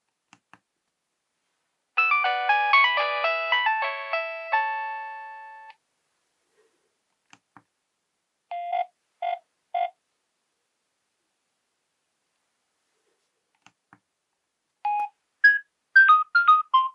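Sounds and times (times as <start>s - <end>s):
polyphonic ringtone: 2.0s - 5.7s, 14.9s - 16.9s
short electronic beeps: 14.9s - 16.9s.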